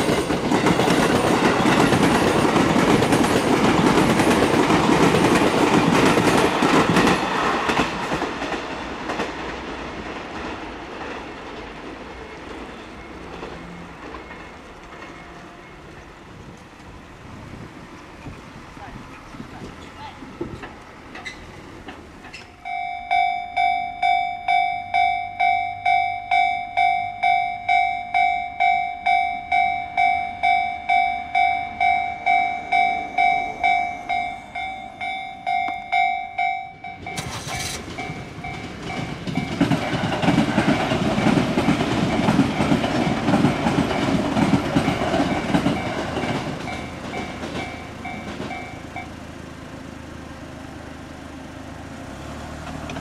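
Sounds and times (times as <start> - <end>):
train rumble and wheel clatter: 0.0 - 53.0
level crossing bell ringing: 22.6 - 39.6.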